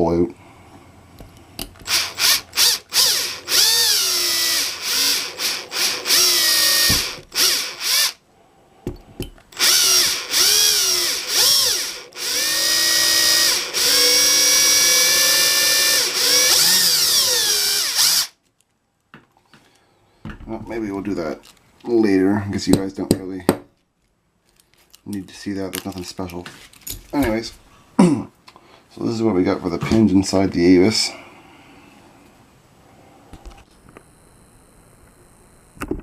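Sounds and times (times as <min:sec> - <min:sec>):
electric drill whining: 0:01.8 - 0:08.2, 0:09.5 - 0:18.4.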